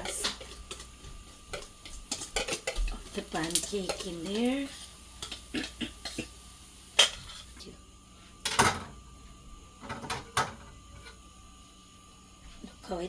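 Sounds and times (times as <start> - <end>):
dishes clattering: 9.8 - 10.8.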